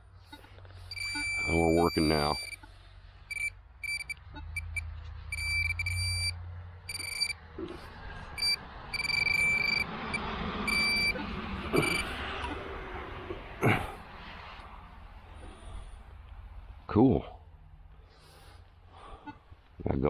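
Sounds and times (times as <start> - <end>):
metal detector beeping: 0.9 - 2.6, 3.3 - 7.4, 8.4 - 9.9, 10.7 - 11.2, 11.8 - 12.6.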